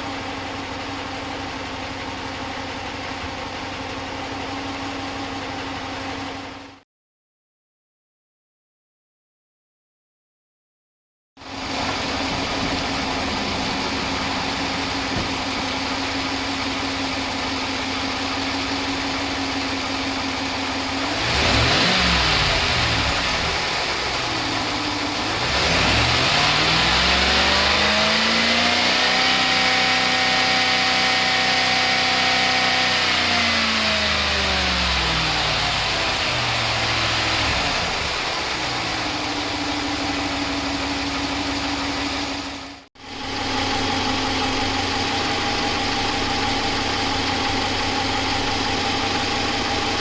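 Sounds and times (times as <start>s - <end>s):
engine idling: 0.0s - 6.8s, 11.4s - 50.0s
engine revving: 11.4s - 50.0s.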